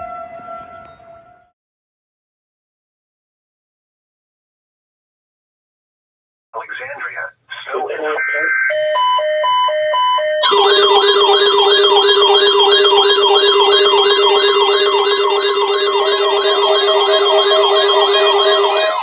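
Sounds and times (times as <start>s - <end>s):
alternating electronic beeps: 8.2s - 19.0s
siren-like warble: 8.5s - 19.0s.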